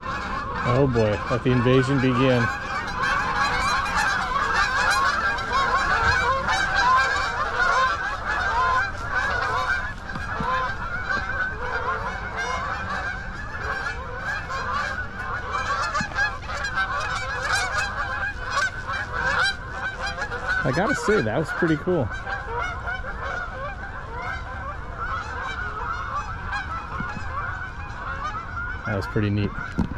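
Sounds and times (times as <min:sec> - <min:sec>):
flock of geese honking: 0:00.0 - 0:29.9.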